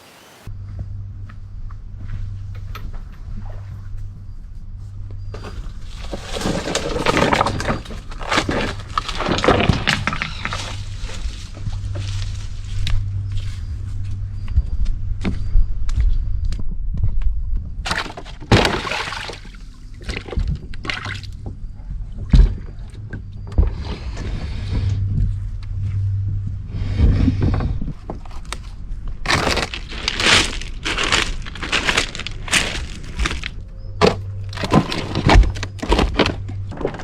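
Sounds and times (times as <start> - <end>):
steady low hum: 0.4 - 37.0
water splashing and sloshing: 5.4 - 13.0, 17.8 - 25.4.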